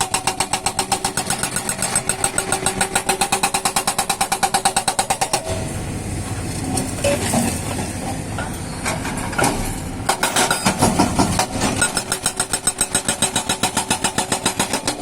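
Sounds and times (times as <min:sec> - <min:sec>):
hydraulic rock breaker hammering: 0:00.0 - 0:05.9, 0:09.5 - 0:15.0
excavator engine running: 0:00.0 - 0:15.0.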